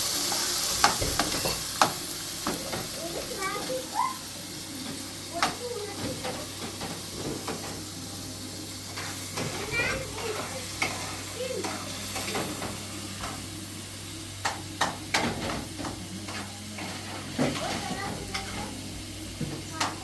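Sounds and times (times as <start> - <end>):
food sizzling in a pan: 0.0 - 20.0
utensil knocking against pan: 14.4 - 16.4.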